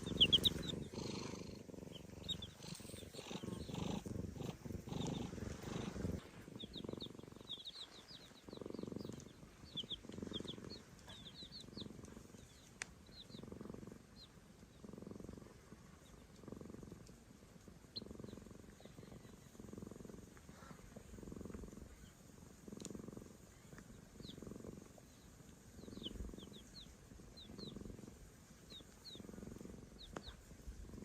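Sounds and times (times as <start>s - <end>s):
chicks peeping: 0.0s - 13.5s, 25.8s - 28.0s, 28.6s - 29.3s, 30.0s - 30.5s
cat purring: 0.0s - 31.0s.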